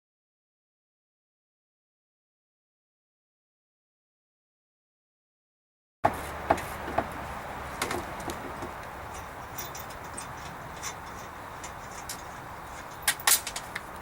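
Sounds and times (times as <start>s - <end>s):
steady background hiss: 6.1s - 14.0s.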